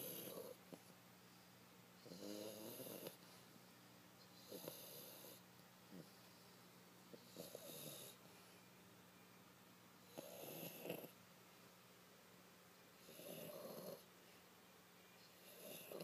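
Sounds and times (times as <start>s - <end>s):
dog snoring: 0.0s - 0.6s, 2.0s - 3.2s, 4.3s - 6.2s, 7.1s - 8.2s, 10.0s - 11.2s, 13.0s - 14.1s, 15.3s - 16.0s.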